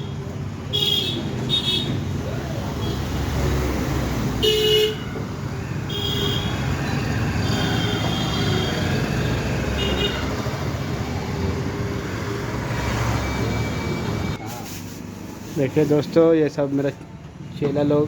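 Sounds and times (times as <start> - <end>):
street traffic rumbling: 0.0 - 18.0
vehicle horn tooting: 7.4 - 8.9, 9.7 - 10.4.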